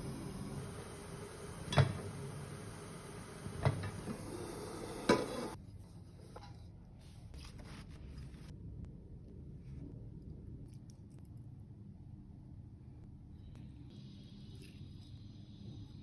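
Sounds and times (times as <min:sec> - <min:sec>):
kitchenware knocking: 0:01.6 - 0:02.4, 0:03.4 - 0:05.6.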